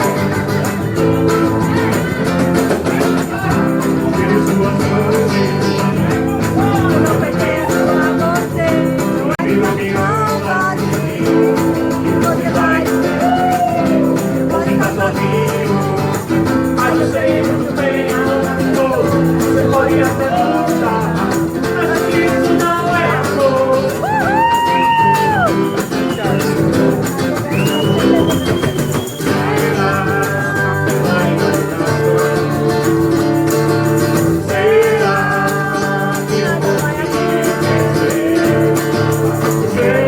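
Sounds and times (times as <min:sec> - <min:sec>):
song with guitar and singing: 0:00.0 - 0:40.0.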